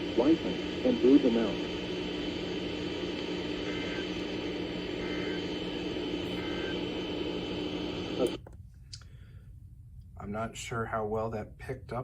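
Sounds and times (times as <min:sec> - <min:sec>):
radio hiss and hum: 0:00.0 - 0:08.4
receiver click: 0:03.0 - 0:04.4.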